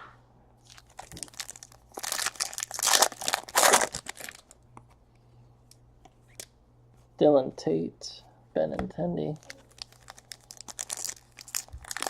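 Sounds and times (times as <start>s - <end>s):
foil wrapper crinkling: 0.6s - 4.6s, 9.4s - 12.0s.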